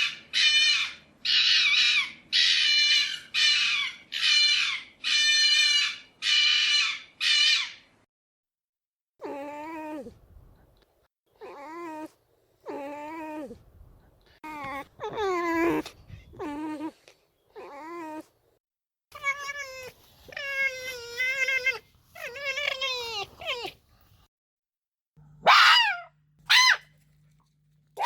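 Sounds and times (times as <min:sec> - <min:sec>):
fox yowling: 0:00.0 - 0:07.8, 0:25.4 - 0:26.9
fox screaming: 0:00.0 - 0:07.9, 0:25.4 - 0:26.9.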